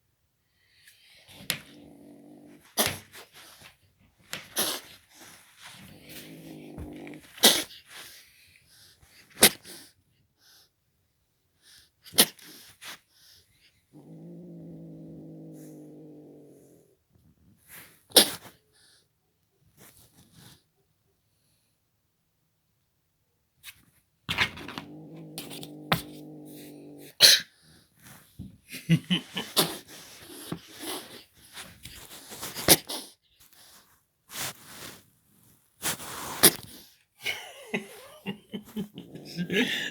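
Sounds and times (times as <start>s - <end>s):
pet growling low: 1.3s - 2.9s, 5.7s - 7.5s, 13.9s - 17.0s, 24.3s - 27.2s, 38.2s - 39.9s.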